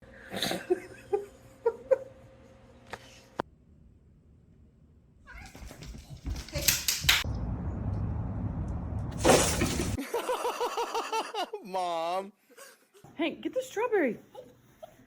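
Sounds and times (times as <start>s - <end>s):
cat meowing: 5.3s - 5.9s
low rumble: 5.8s - 10.0s.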